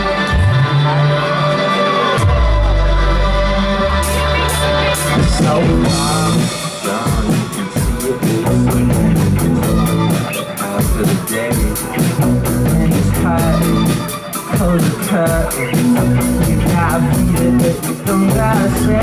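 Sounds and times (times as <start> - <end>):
live band playing: 0.0 - 19.0
steady drum beat: 3.9 - 19.0.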